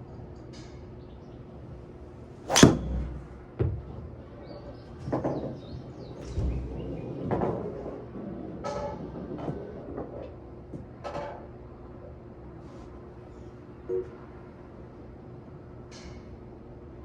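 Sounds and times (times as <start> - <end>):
golf driver striking ball: 2.5 - 3.4.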